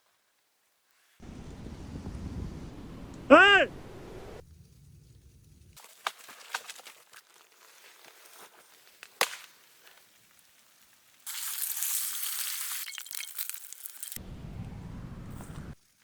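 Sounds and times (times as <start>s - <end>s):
crackles: 4.4s - 16.0s
loud sizzling hiss: 8.4s - 14.2s.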